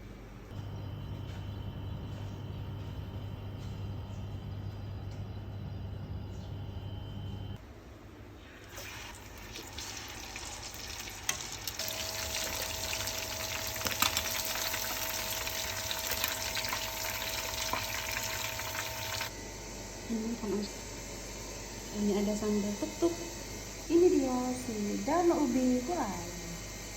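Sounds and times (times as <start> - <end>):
food sizzling in a pan: 8.4 - 19.3.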